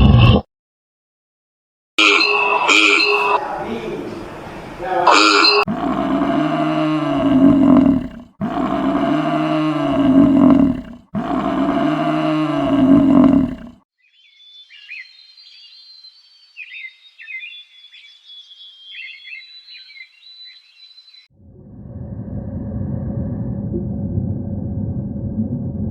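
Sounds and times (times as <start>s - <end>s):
large animal roaring: 0.0s - 0.4s, 2.0s - 3.4s, 5.0s - 13.8s, 21.4s - 25.9s.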